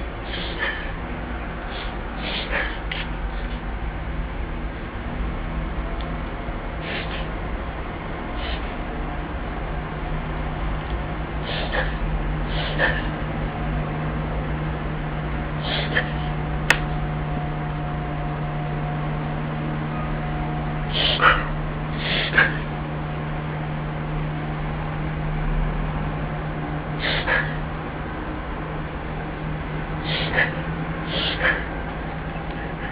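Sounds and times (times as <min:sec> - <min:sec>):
steady low hum: 0:00.0 - 0:32.9
dog reverse sneezing: 0:00.3 - 0:01.0, 0:01.7 - 0:03.6, 0:06.8 - 0:07.3, 0:08.4 - 0:08.7, 0:11.4 - 0:13.1, 0:15.6 - 0:16.3, 0:20.9 - 0:22.6, 0:27.0 - 0:27.6, 0:30.0 - 0:31.7.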